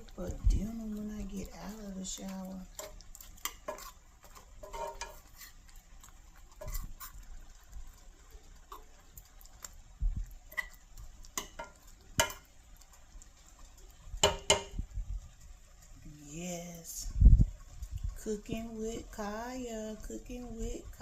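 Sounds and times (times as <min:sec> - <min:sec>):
utensils clinking on pots and dishes: 0:04.6 - 0:05.3, 0:11.4 - 0:12.5.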